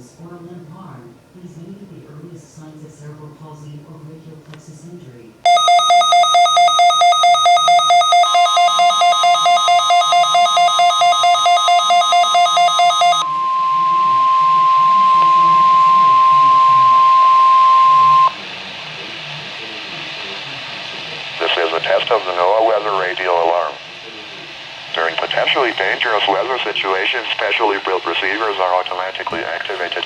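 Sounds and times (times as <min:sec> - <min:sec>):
pulsing two-tone beep: 0:05.5 - 0:18.4
steady warning alarm tone: 0:05.5 - 0:18.4
radio hiss: 0:12.8 - 0:30.0.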